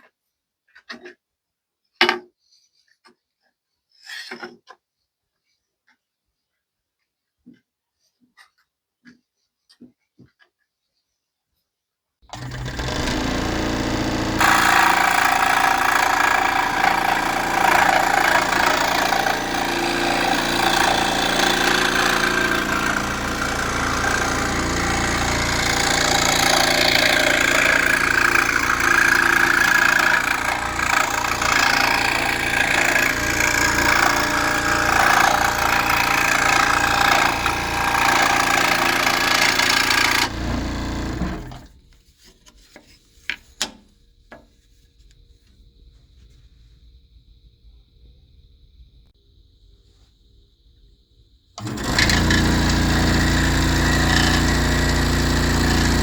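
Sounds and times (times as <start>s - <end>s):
saw blade cutting board: 12.3s - 41.7s, 51.6s - 56.0s
scroll saw motor starting: 12.3s - 41.8s, 51.6s - 56.0s.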